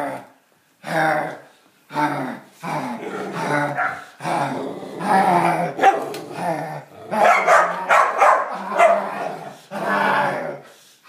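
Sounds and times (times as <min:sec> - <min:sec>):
dog barking and growling: 0:02.7 - 0:10.6.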